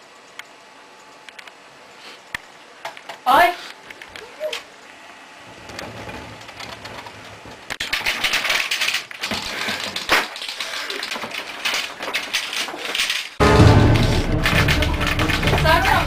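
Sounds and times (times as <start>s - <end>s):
objects rattling and clattering: 5.6s - 16.0s
low rumble: 13.4s - 16.0s.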